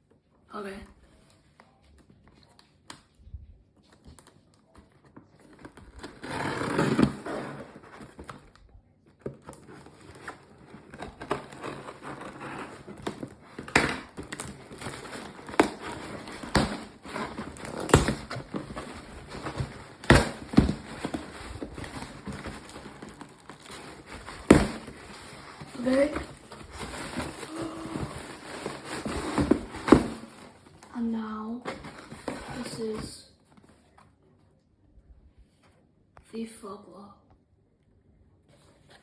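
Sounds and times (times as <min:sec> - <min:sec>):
packaging rustling and crinkling: 0:03.9 - 0:33.9.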